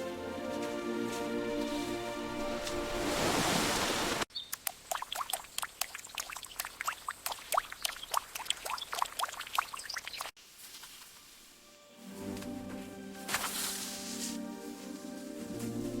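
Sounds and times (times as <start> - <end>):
music: 0.0 - 3.2, 11.6 - 16.0
water dripping into water: 4.4 - 10.4.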